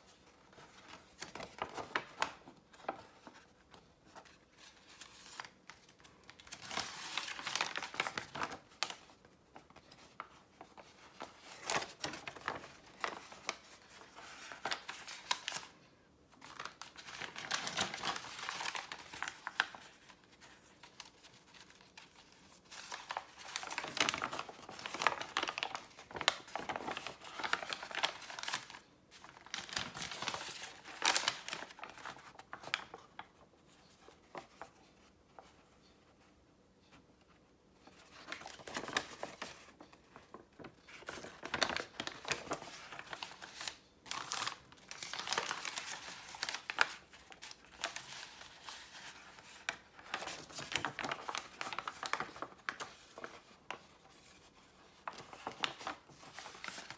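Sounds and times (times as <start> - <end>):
paper crinkling and rustling: 0.0 - 36.3, 36.9 - 56.9.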